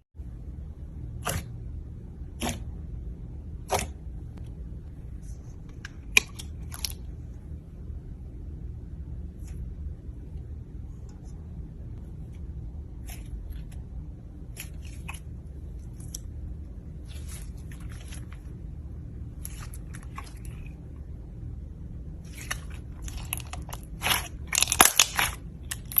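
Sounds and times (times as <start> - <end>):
low hum: 0.2 - 26.0
slime crackling pops: 22.3 - 26.0.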